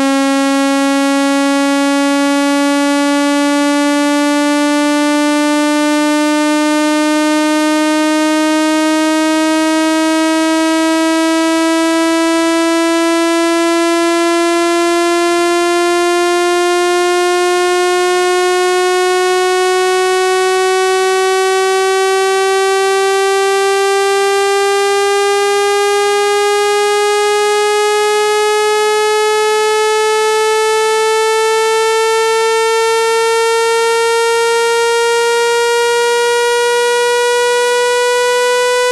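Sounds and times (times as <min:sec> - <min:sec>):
buzzy tone rising in pitch: 0:00.0 - 0:38.9.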